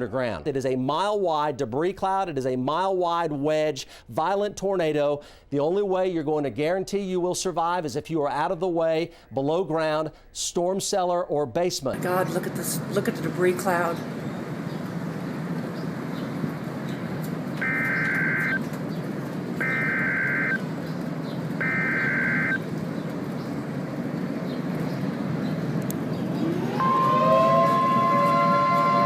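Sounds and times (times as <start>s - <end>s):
steady noise: 15.3s - 24.4s
alert tone chord: 17.6s - 18.6s, 21.6s - 22.6s, 26.5s - 29.0s
data bursts: 17.6s - 18.6s, 19.6s - 20.6s, 21.6s - 22.6s.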